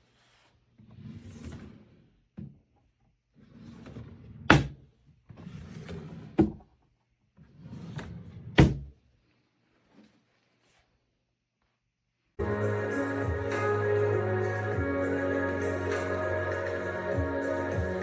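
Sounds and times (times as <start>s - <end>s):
drawers sliding on runners: 0.2s - 2.1s, 3.4s - 6.6s, 7.4s - 8.9s.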